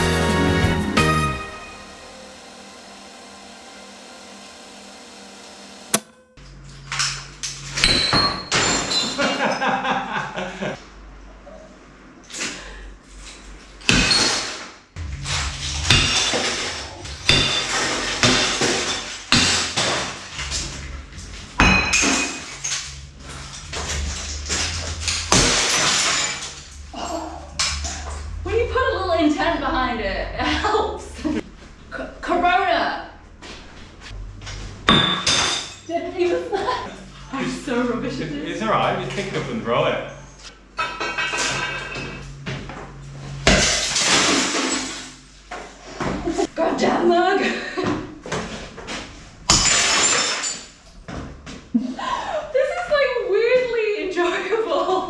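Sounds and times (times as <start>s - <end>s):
background music: 0.0s - 3.0s
faint steady hum: 0.0s - 6.1s
high ringing note: 0.0s - 6.3s
hard crashes: 15.0s - 20.1s
glass shattering: 25.1s - 26.7s, 49.5s - 50.8s.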